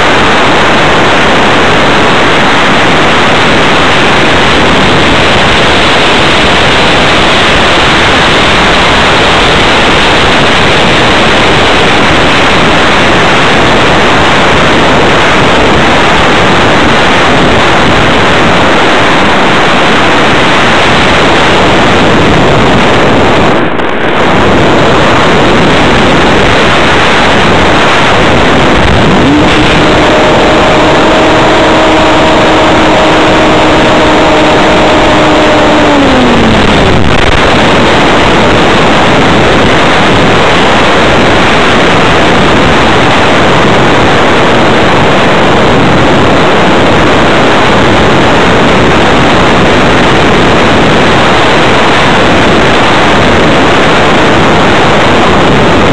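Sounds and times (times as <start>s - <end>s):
electric motor and propeller hum: 0.0s - 41.2s
rush of airflow: 0.0s - 55.9s.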